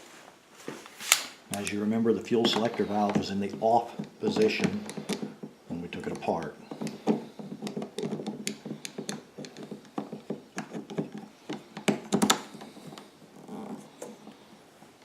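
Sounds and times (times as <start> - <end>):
plastic parts clicking and tapping: 2.4 - 14.4.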